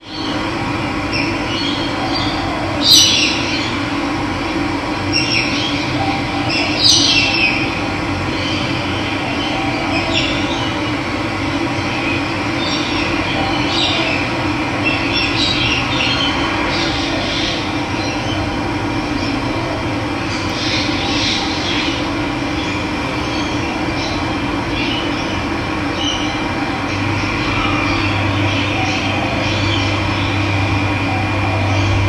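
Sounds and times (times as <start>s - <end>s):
birds chirping: 20.2s - 32.0s.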